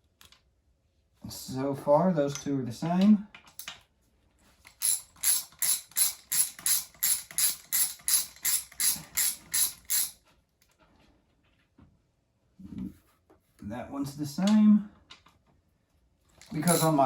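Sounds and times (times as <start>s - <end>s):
hand ratchet clicking: 4.7s - 10.2s, 16.4s - 17.0s.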